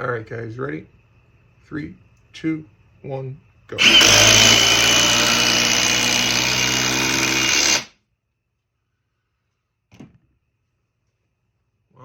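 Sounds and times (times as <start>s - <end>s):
impact driver driving screw: 3.8s - 7.9s.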